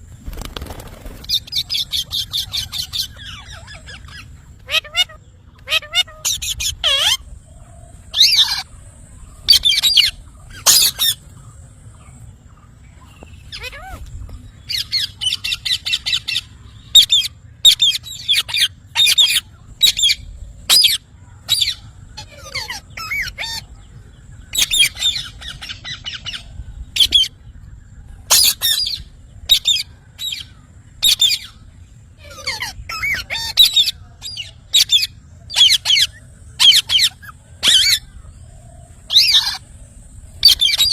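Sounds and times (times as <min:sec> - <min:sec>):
parrot rapid chattering: 0:01.2 - 0:07.3, 0:09.5 - 0:11.2
parrot shrill calls: 0:01.5 - 0:07.3, 0:08.1 - 0:08.7, 0:09.4 - 0:11.2, 0:13.5 - 0:14.0, 0:14.7 - 0:23.6, 0:28.3 - 0:31.5, 0:32.2 - 0:38.1, 0:39.1 - 0:39.6, 0:40.4 - 0:40.9.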